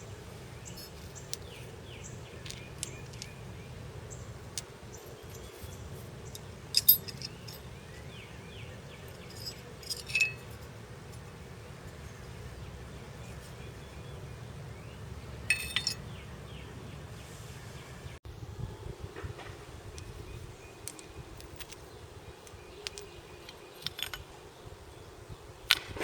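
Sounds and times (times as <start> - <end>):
metal clinking: 6.3 - 8.0, 9.0 - 11.3, 15.5 - 16.2, 22.8 - 24.2.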